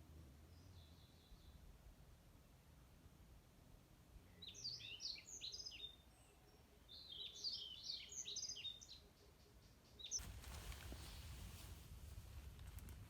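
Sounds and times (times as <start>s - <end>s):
songbird chirping: 0.4s - 1.8s, 4.1s - 11.3s.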